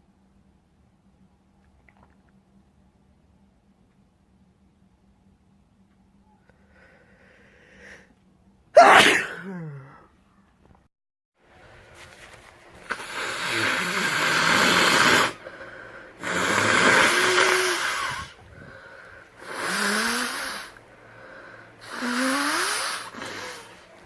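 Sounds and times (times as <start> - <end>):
person blowing nose: 12.8 - 15.4, 16.2 - 18.4, 19.4 - 20.7.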